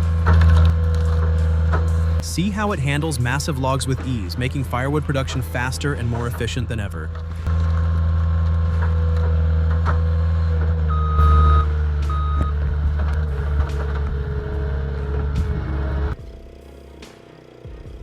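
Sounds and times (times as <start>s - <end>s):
heavy machine engine running: 0.0s - 18.0s
short high beeps: 10.9s - 12.6s.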